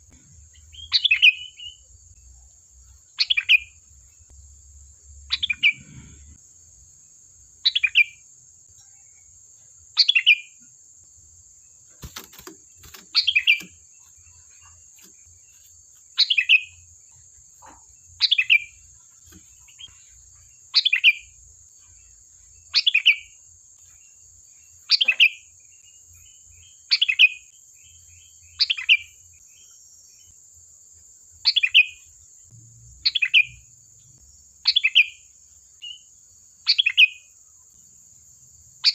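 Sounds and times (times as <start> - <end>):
bird calling: 5.3 - 6.3, 12.0 - 14.8.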